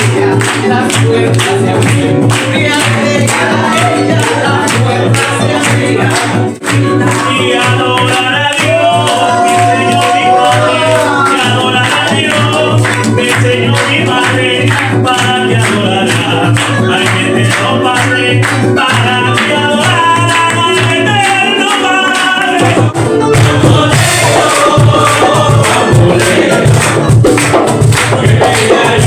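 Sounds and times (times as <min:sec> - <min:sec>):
acoustic band playing: 0:00.0 - 0:29.0
person singing: 0:00.0 - 0:29.0.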